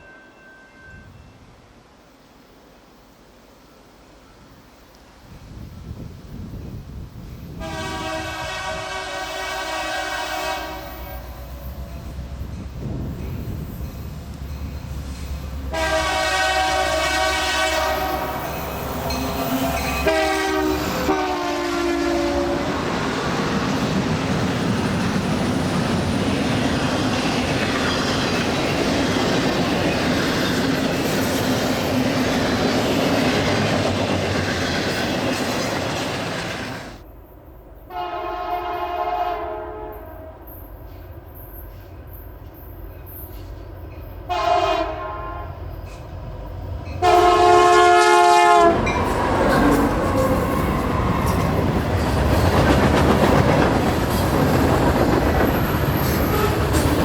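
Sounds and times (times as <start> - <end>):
train rail noise: 0.0 - 57.0
locomotive air horn: 7.6 - 11.6, 15.7 - 22.8, 37.9 - 40.5, 44.3 - 45.6, 47.0 - 51.4, 56.1 - 57.0
clicking train wheels: 10.7 - 15.7, 22.2 - 37.1, 48.7 - 57.0.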